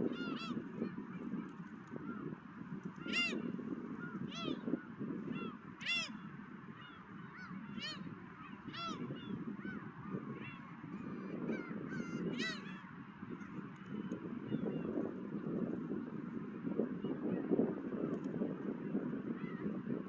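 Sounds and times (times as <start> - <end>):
gulls calling: 0.0 - 15.0.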